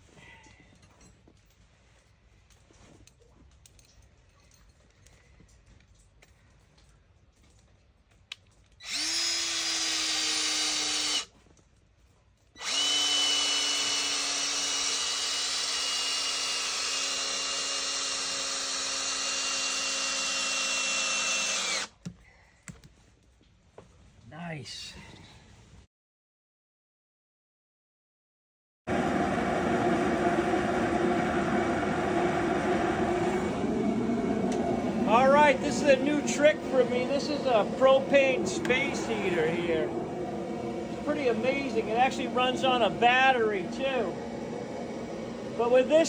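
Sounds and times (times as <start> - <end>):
electric drill drilling into wood: 8.8 - 11.3, 12.6 - 22.0.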